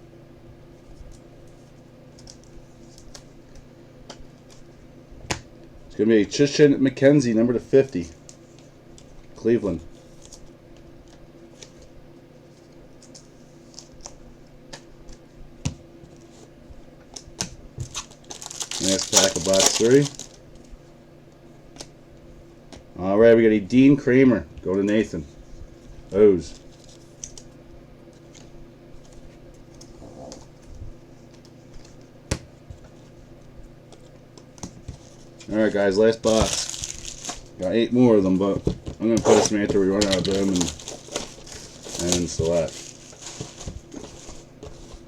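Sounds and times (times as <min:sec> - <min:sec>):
faint hum: 0:00.0 - 0:45.0.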